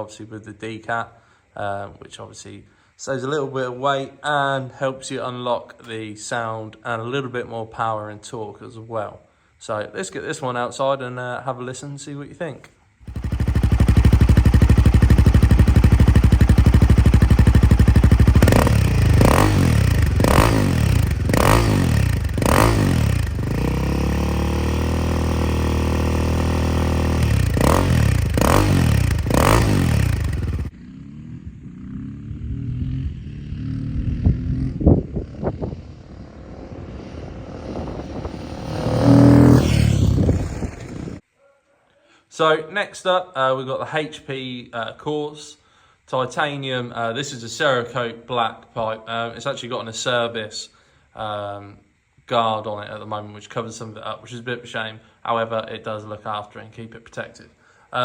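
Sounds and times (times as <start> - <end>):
motorcycle engine idling and revving: 13.0 - 41.2.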